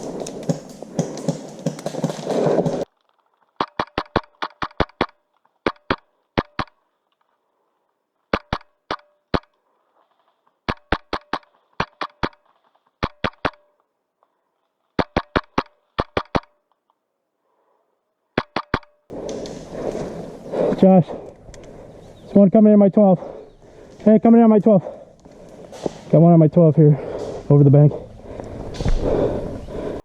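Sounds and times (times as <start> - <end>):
rustling noise: 0.0 - 3.8, 25.2 - 26.3.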